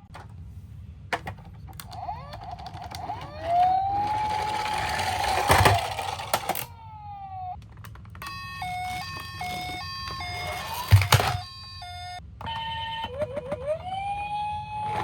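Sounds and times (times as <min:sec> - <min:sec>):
toy siren two-tone: 0:02.0 - 0:07.5, 0:08.2 - 0:15.0.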